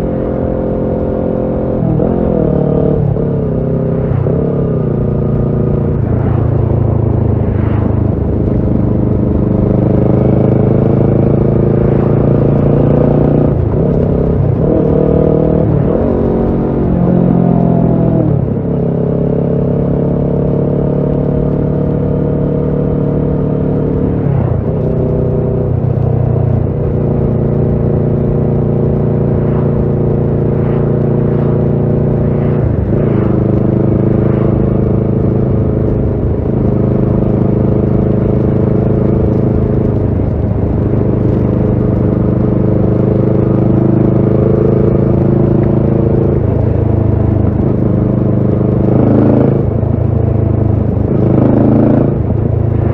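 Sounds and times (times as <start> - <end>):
motorcycle engine running: 0.0 - 52.9.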